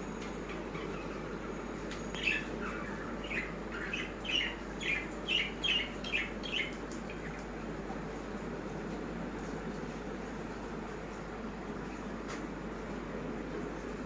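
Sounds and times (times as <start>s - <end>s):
steady background noise: 0.0s - 14.0s
small bird chirping: 2.1s - 7.4s.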